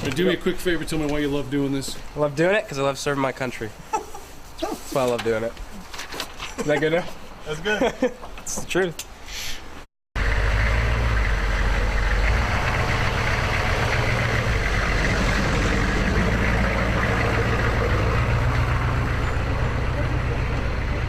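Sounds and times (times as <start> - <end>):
vehicle engine droning: 10.2 - 21.0.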